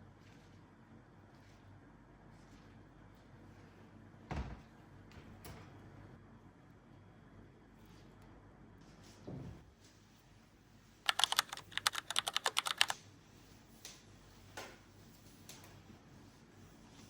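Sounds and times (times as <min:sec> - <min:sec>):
fast keyboard keystrokes: 0:11.1 - 0:13.0.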